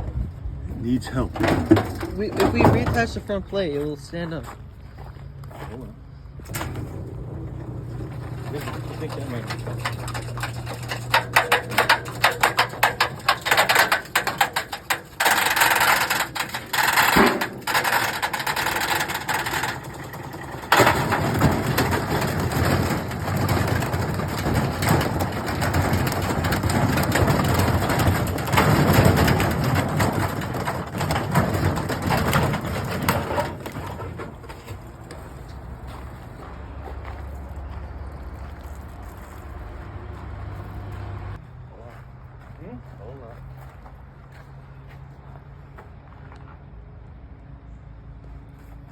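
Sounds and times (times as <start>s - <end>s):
washing machine knocking and rattling: 1.1s - 3.2s, 6.5s - 35.3s.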